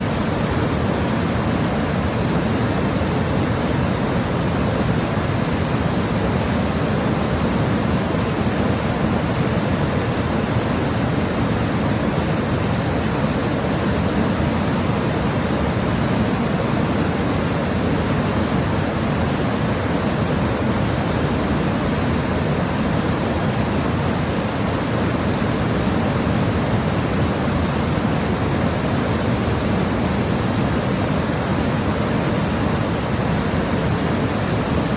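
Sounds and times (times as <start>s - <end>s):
river water rushing over rocks: 0.0s - 34.9s.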